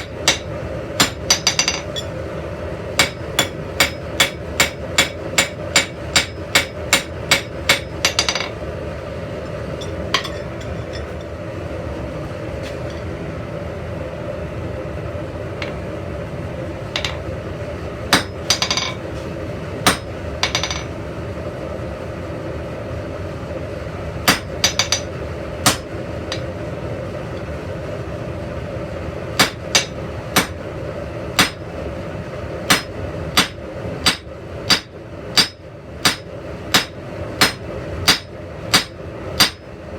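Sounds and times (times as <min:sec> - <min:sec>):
hammer striking iron on anvil: 0:00.0 - 0:02.1, 0:03.0 - 0:08.6, 0:09.8 - 0:11.2, 0:17.0 - 0:17.3, 0:18.1 - 0:19.0, 0:19.8 - 0:20.9, 0:24.2 - 0:26.5, 0:29.4 - 0:30.6, 0:31.4 - 0:31.6, 0:32.7 - 0:39.7
steady hum: 0:00.0 - 0:39.9.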